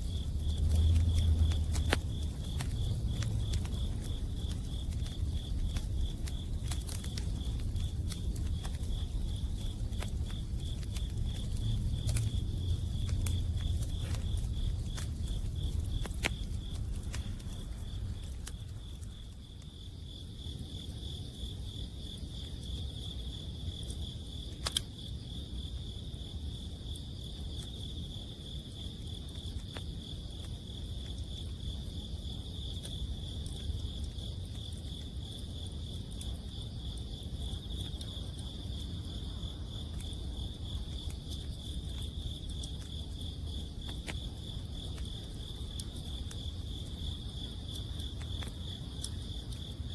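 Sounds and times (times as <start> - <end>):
campfire crackles: 0.0 - 49.9
crickets chirping: 0.0 - 49.9
low rumble: 8.3 - 19.4.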